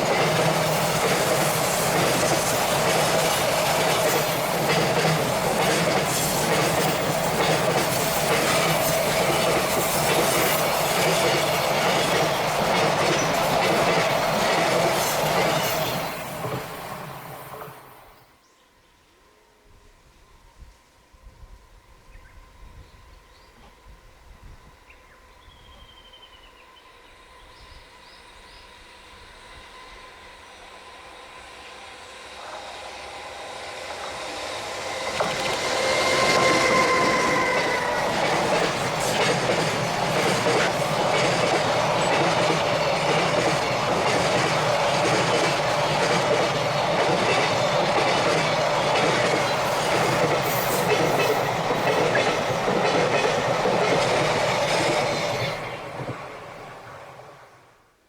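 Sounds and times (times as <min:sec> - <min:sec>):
freight train passing: 0:00.0 - 0:18.5, 0:19.2 - 0:58.0.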